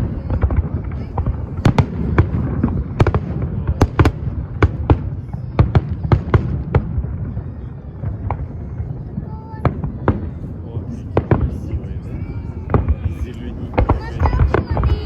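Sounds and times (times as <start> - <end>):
fireworks bangs: 0.0 - 15.0.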